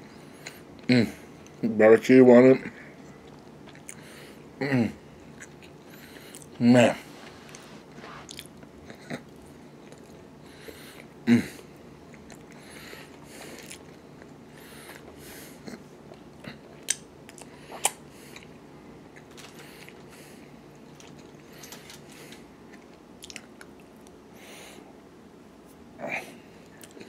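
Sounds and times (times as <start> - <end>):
person chewing food: 3.0 - 4.2, 5.2 - 6.6, 7.4 - 10.3, 12.0 - 24.2, 26.6 - 27.0.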